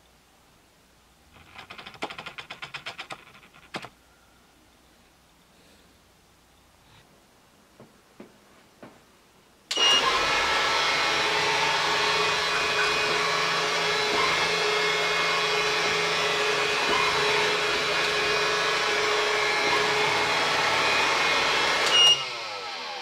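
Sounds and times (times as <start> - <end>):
robotic vacuum motor humming: 9.8 - 23.0.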